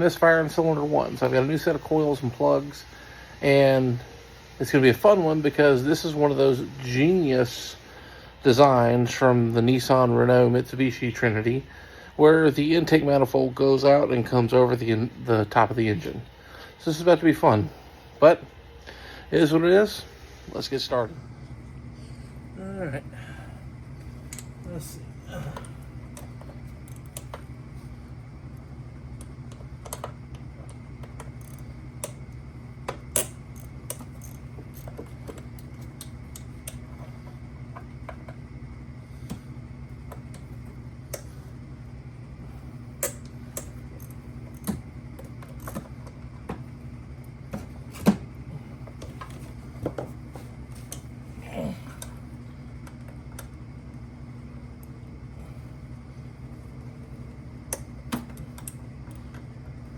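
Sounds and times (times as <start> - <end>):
steady low hum: 0.0 - 59.9
tools and fasteners clinking: 29.8 - 32.2, 32.9 - 37.1.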